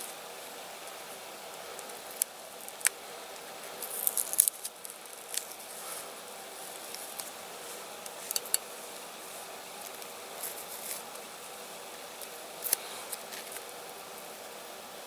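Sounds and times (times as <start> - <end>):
handling clicks taps and scrapes: 8.0 - 8.7.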